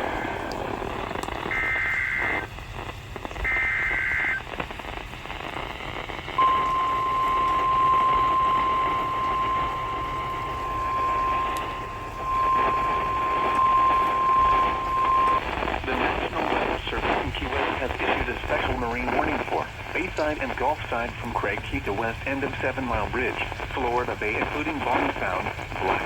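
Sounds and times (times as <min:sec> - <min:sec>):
buzzy two-tone data bursts: 0:00.0 - 0:26.0
radio hiss: 0:00.0 - 0:26.0
steady high warning tone: 0:00.0 - 0:26.0.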